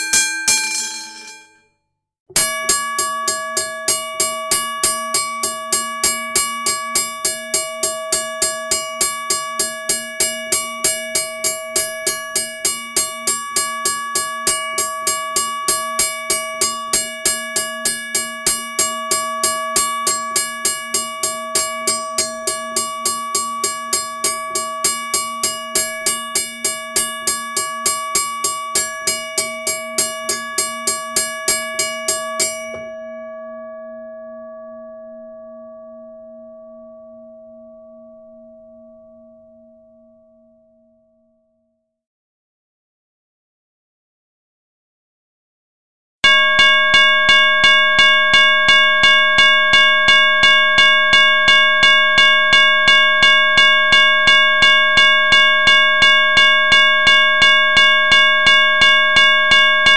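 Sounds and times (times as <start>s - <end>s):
level crossing bell ringing: 0.0s - 1.6s, 2.4s - 33.3s.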